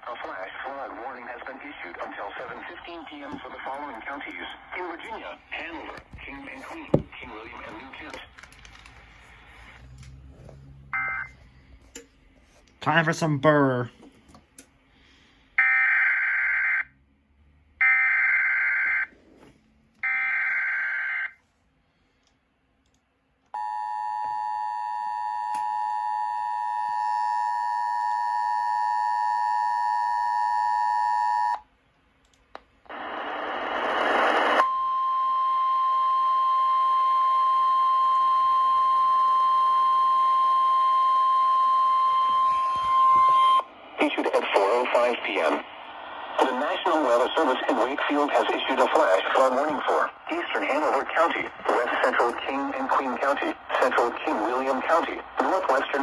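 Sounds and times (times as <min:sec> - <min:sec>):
radio static hiss: 0:00.0 - 0:08.3, 0:32.9 - 0:34.6, 0:44.0 - 0:56.0
steady single alarm tone: 0:23.6 - 0:31.6, 0:34.7 - 0:43.7.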